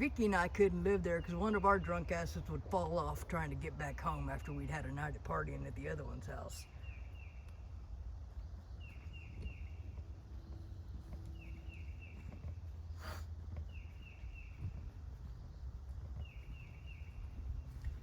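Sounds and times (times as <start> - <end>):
low rumble: 0.0 - 18.0
songbird downward-sliding notes: 0.0 - 18.0.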